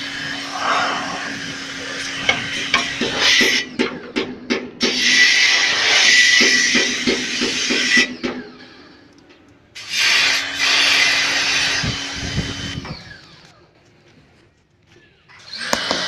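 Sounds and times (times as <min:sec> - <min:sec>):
motorised tool hissing: 0:00.0 - 0:03.7, 0:04.8 - 0:09.0, 0:09.8 - 0:13.5, 0:15.3 - 0:16.0
steady hum: 0:00.0 - 0:06.4.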